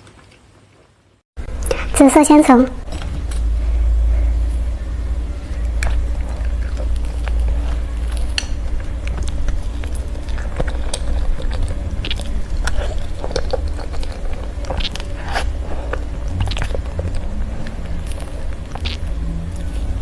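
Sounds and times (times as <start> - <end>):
steady low hum: 1.4 - 20.0
wet chewing and mouth clicks: 5.6 - 20.0.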